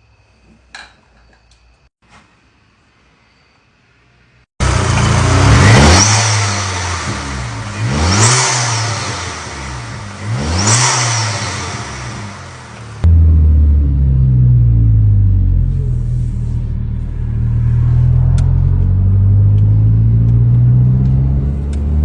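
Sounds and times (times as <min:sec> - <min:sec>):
car engine revving: 0:04.6 - 0:22.0.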